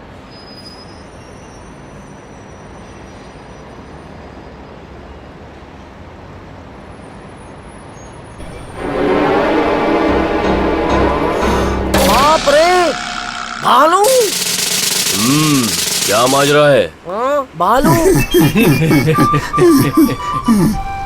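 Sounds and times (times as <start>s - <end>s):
loud layered pitched sound: 8.4s - 16.9s.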